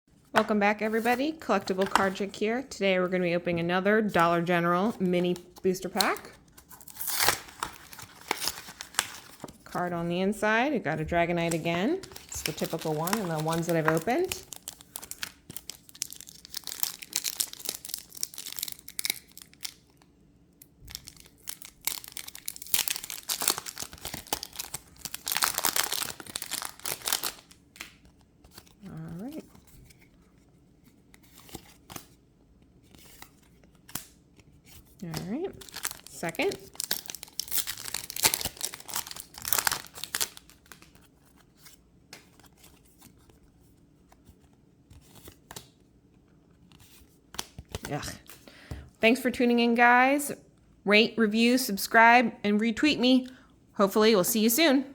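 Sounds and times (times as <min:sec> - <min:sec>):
foil wrapper crinkling and tearing: 0:06.0 - 0:09.6, 0:11.5 - 0:29.4, 0:34.9 - 0:41.7.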